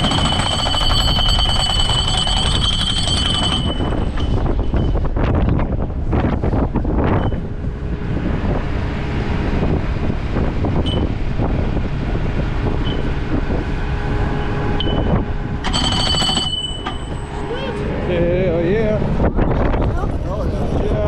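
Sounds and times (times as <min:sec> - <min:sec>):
wind buffeting microphone: 0:00.0 - 0:21.0
low rumble: 0:03.5 - 0:15.7, 0:16.9 - 0:21.0.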